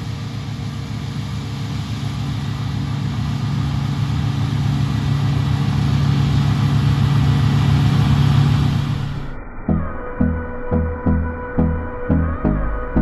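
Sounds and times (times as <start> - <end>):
farm machinery engine drone: 0.0 - 12.7.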